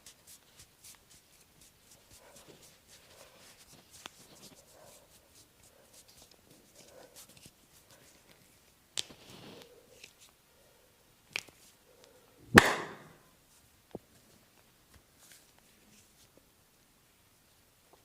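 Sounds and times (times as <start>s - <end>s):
sharp cracks from head massage: 0.0s - 10.4s.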